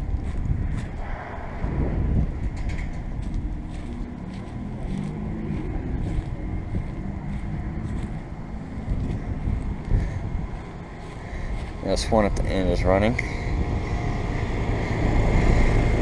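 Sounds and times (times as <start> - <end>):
heat pump fan humming: 0.0 - 16.0
wind rumble on microphone: 0.0 - 16.0.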